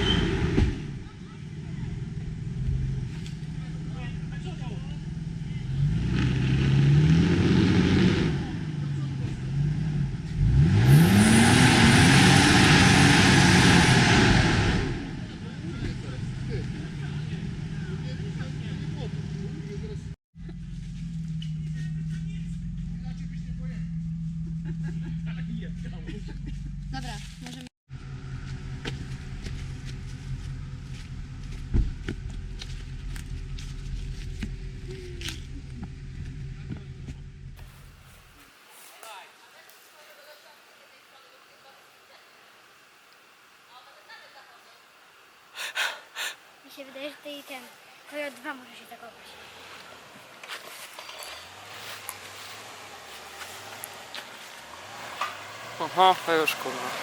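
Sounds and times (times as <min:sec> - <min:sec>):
off-road vehicle engine revving: 0:00.0 - 0:37.9, 0:48.8 - 0:57.0
heavy thud: 0:31.6 - 0:32.2.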